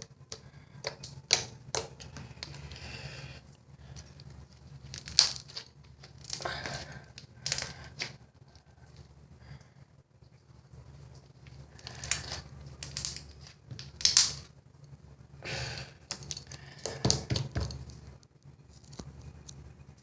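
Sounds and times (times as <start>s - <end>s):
slime crackling and popping: 4.8s - 8.1s, 11.8s - 14.5s.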